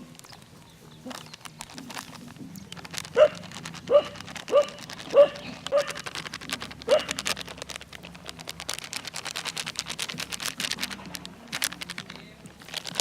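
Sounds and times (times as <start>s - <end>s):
flour clicking and crackling: 0.0s - 13.0s
animal yelp: 3.2s - 6.1s, 6.9s - 7.3s.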